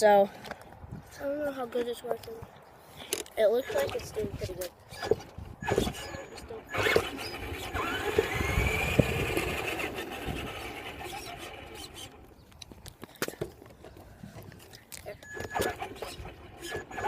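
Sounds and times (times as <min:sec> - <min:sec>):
rc car motor whining: 0:03.6 - 0:12.3, 0:15.3 - 0:17.0
rushing of drive and tyres: 0:04.9 - 0:12.5.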